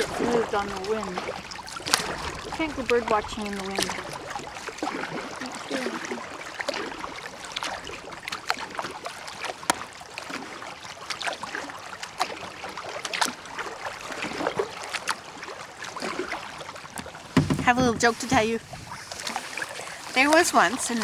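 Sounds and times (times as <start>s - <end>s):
water drips: 0.0s - 21.0s
water splashing around a kayak: 0.0s - 21.0s.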